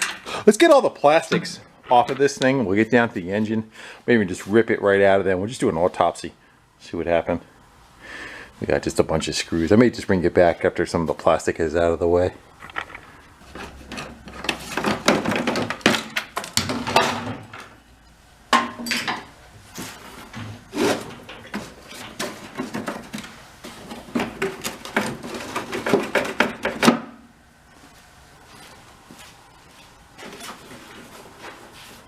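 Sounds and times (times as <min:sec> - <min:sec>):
tools clattering and clicking: 0:12.6 - 0:17.8, 0:18.6 - 0:27.1.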